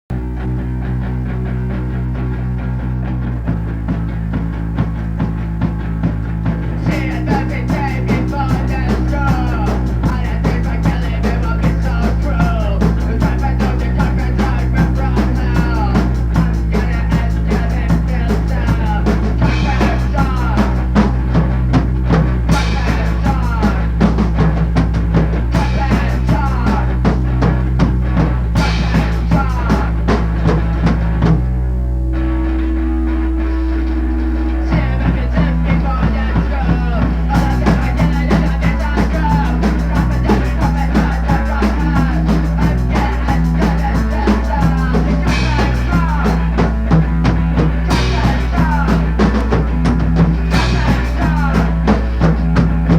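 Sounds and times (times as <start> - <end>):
drum kit beat: 3.5 - 31.5, 32.9 - 52.9
low droning notes: 31.4 - 35.6.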